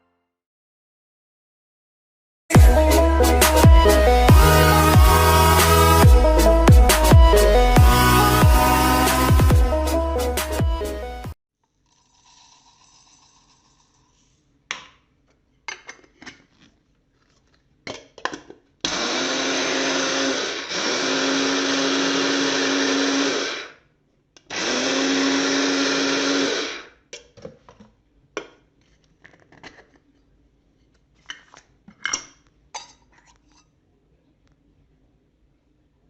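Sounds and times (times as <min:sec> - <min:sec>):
coffee grinder whirring: 0:11.6 - 0:14.3, 0:18.9 - 0:23.8, 0:24.4 - 0:27.0.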